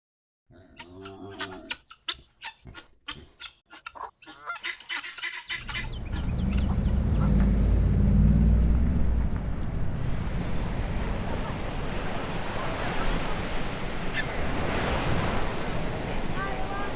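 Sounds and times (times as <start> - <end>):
geese honking: 1.0 - 15.3
faint bird chirps: 4.4 - 7.8, 14.2 - 14.4
low rumble: 5.6 - 12.2.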